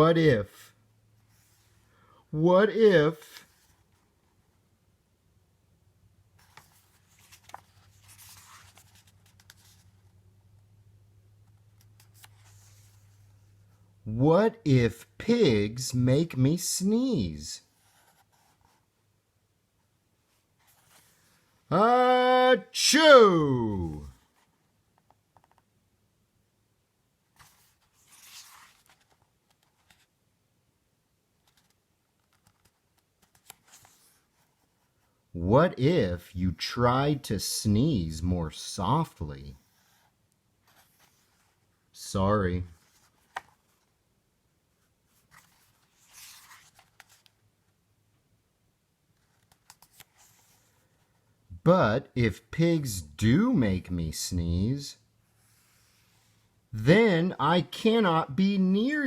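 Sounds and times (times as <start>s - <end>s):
book pages rustling: 6.4s - 10.2s, 11.4s - 13.8s, 17.7s - 18.9s, 20.4s - 21.5s, 27.3s - 30.2s, 31.4s - 35.2s, 39.6s - 41.8s, 42.6s - 44.0s, 44.8s - 47.8s, 49.1s - 51.4s.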